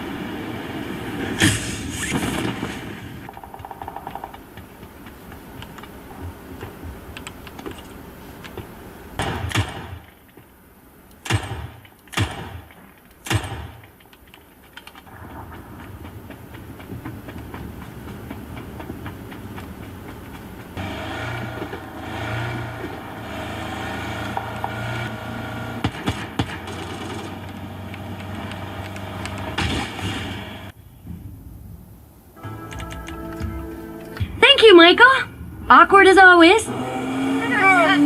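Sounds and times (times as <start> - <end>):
loud sharp bangs with echo: 9.2 - 10.2, 11.2 - 13.9, 25.8 - 27.4.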